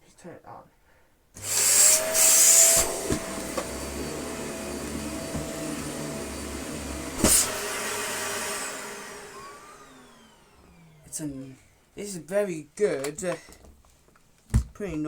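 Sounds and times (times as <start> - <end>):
vacuum cleaner running: 1.4 - 11.7.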